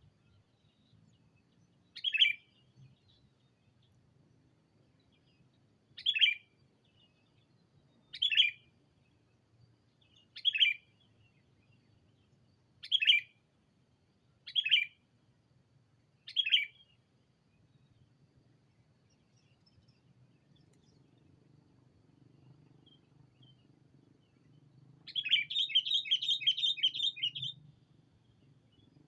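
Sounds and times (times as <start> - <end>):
bird calling: 2.0 - 2.6, 6.0 - 6.5, 8.1 - 8.6, 10.4 - 11.0, 12.8 - 13.3, 16.3 - 16.9, 22.8 - 27.7.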